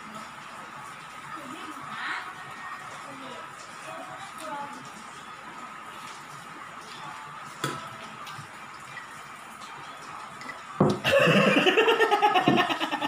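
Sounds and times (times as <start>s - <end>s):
person laughing loudly: 11.0s - 13.0s.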